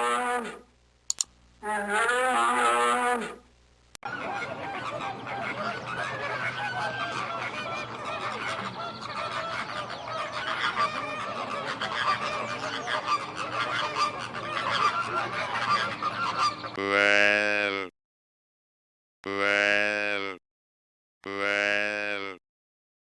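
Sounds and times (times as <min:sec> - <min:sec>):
geese honking: 0:04.0 - 0:16.8
low drawn-out animal call: 0:04.0 - 0:16.8.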